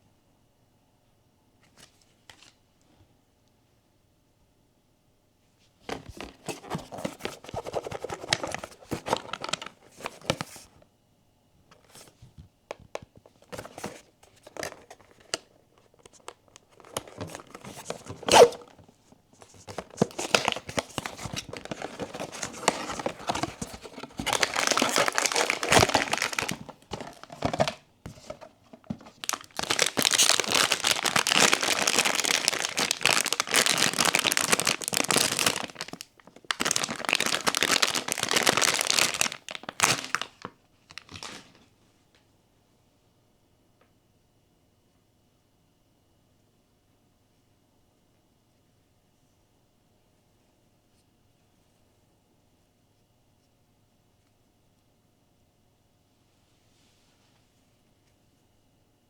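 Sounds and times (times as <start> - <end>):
plastic wrapping rustling and crinkling: 5.8 - 10.8, 11.7 - 41.7.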